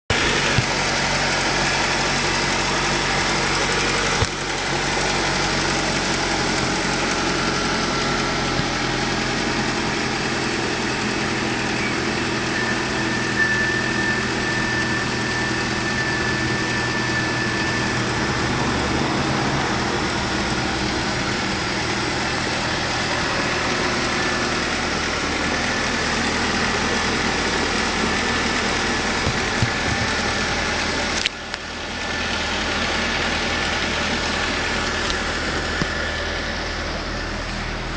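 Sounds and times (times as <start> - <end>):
car engine idling: 0.0 - 37.9.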